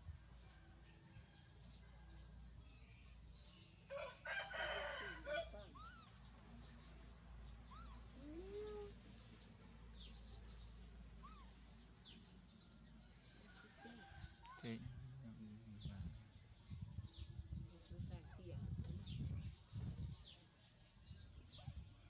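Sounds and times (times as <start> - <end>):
small birds chirping: 0.0 - 22.0
rooster crowing: 3.9 - 5.6.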